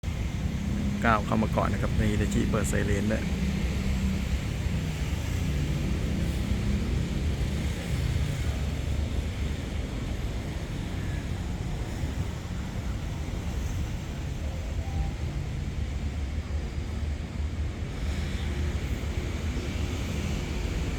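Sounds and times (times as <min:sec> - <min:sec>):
diesel locomotive rumble: 0:00.0 - 0:20.9.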